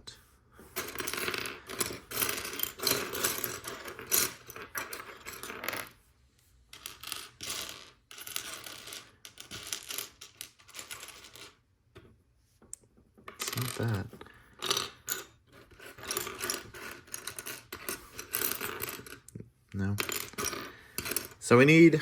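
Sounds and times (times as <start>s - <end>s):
plastic pieces clattering: 13.3s - 19.3s.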